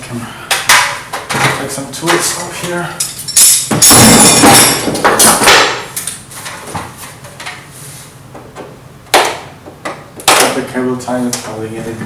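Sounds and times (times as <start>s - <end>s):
hand tools clattering: 0.7s - 5.6s.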